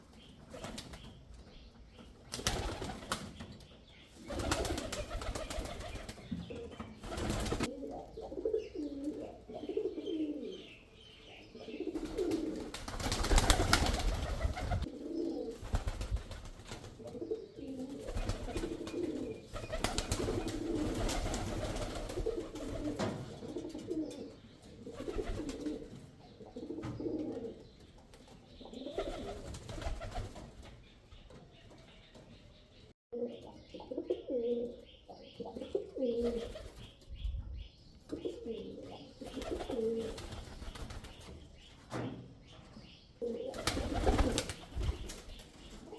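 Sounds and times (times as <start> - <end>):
wings flapping: 2.3 - 3.4, 4.3 - 6.2, 7.0 - 7.7, 12.0 - 14.9, 15.5 - 17.0, 18.0 - 23.2, 29.0 - 30.6, 39.2 - 41.3, 43.5 - 45.4
pigeon cooing: 7.5 - 12.7, 13.3 - 15.7, 33.2 - 36.7, 38.1 - 40.2, 43.2 - 44.4.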